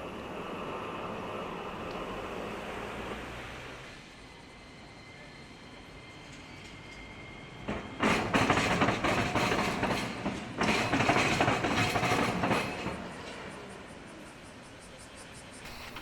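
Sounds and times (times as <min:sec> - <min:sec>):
train wheels clacking over rail joints: 0:07.6 - 0:13.7.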